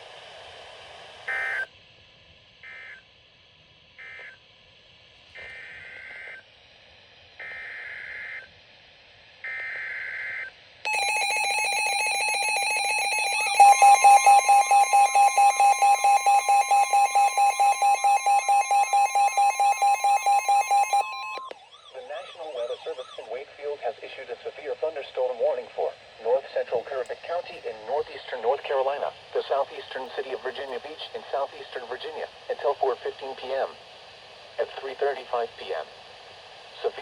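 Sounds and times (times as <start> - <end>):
warbling data bursts: 10.9 - 21.4
pulsing two-tone alarm: 10.9 - 23.2.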